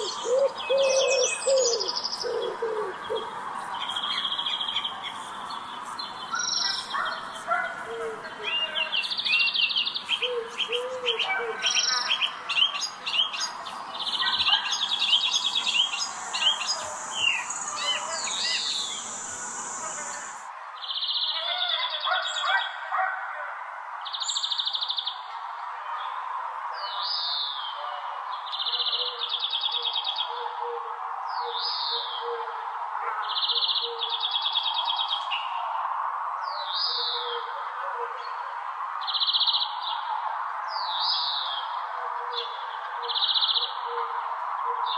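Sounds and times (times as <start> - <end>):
bird chirps: 0.0 - 20.5
songbird trills: 0.0 - 20.5.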